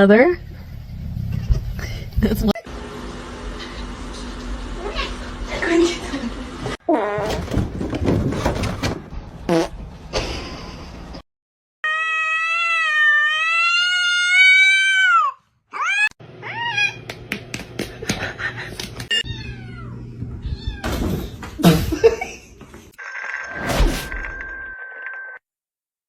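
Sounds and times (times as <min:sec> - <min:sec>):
cat meowing: 0:11.8 - 0:17.0.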